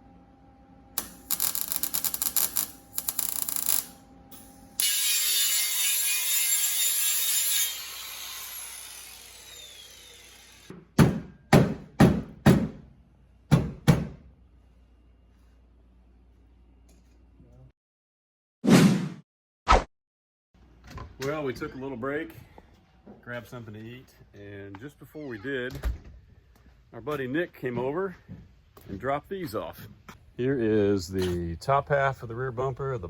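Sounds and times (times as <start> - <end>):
arc welder crackling: 1.0 - 10.7
power tool whining: 1.0 - 10.7.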